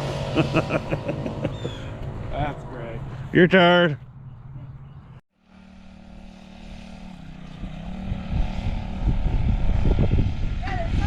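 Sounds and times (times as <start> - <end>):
mini bike engine buzzing: 5.5 - 11.0.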